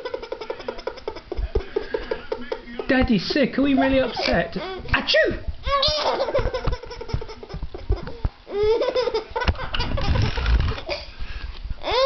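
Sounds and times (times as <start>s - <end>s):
laughter in quick bursts: 5.9s - 10.9s.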